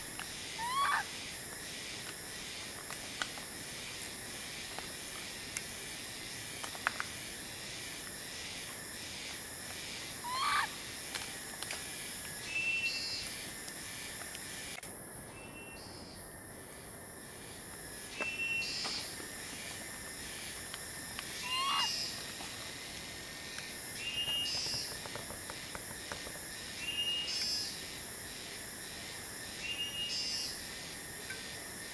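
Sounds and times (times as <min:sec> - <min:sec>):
steady high hiss: 0:00.0 - 0:31.9
bird calling: 0:21.4 - 0:22.1.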